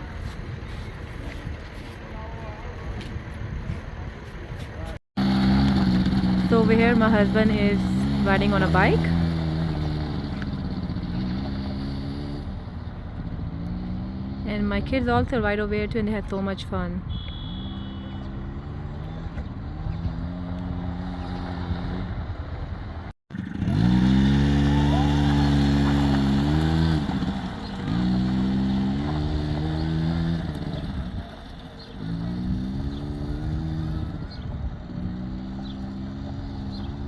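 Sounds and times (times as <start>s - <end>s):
dirt bike engine revving: 5.2s - 15.2s, 17.3s - 22.7s, 23.3s - 37.0s.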